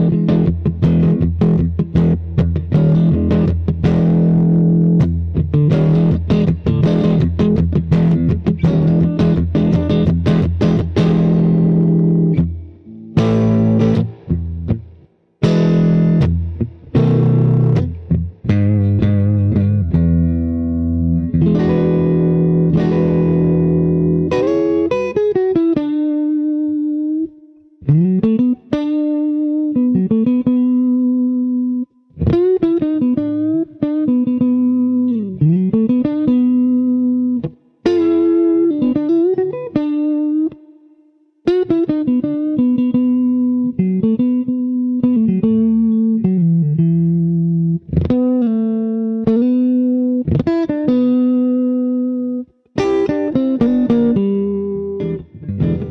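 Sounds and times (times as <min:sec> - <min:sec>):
electric guitar string bends: 0:00.0 - 0:40.6, 0:41.5 - 0:55.9
electric guitar chords strummed: 0:00.0 - 0:40.8, 0:41.4 - 0:55.9.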